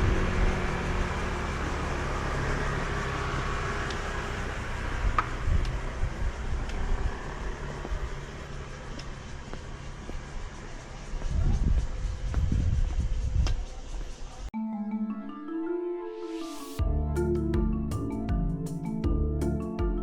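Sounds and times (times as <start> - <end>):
steady traffic noise: 0.0 - 14.5
vehicle engine hum: 0.0 - 14.5.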